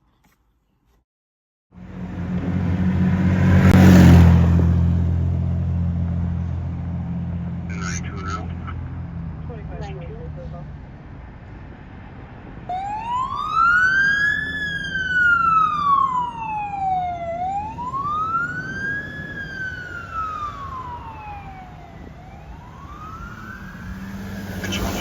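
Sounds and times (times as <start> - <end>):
fire engine siren wailing: 12.6 - 25.0.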